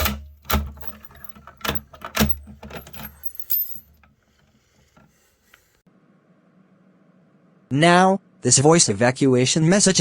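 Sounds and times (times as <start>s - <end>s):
metallic clicks and knocks: 0.0s - 4.1s
keys jangling: 0.5s - 4.0s.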